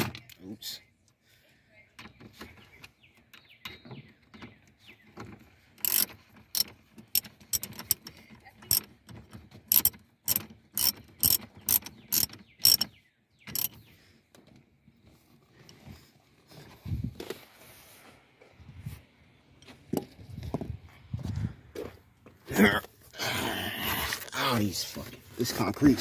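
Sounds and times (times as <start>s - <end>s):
ratchet wrench clicking: 5.8s - 8.1s, 9.7s - 12.9s, 13.5s - 13.8s.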